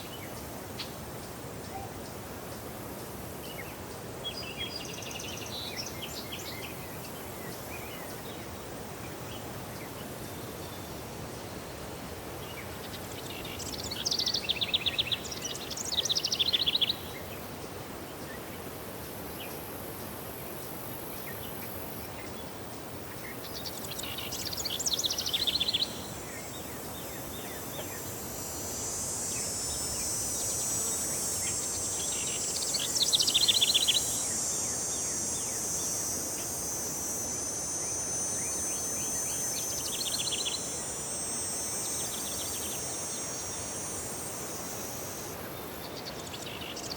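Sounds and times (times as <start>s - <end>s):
high-pitched insect drone: 23.3s - 46.9s
songbird trilling: 30.8s - 43.7s.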